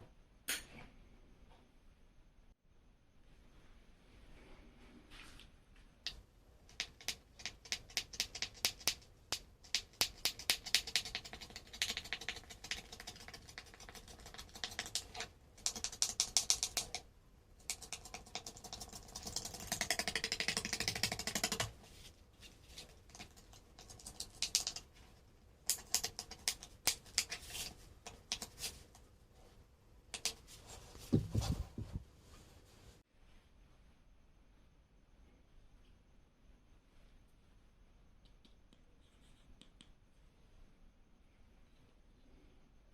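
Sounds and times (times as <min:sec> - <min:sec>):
rapid sharp mechanical clicks: 0:17.6 - 0:21.8.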